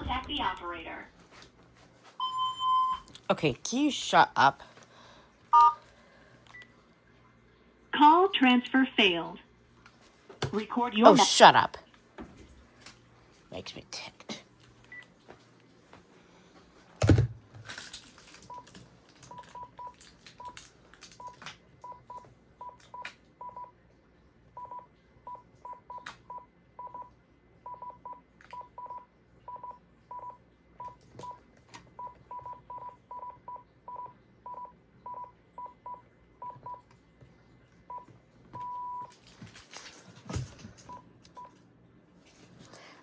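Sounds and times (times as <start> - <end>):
phone keypad beeps: 2.2 - 3.1, 5.6 - 5.8, 37.9 - 39.1.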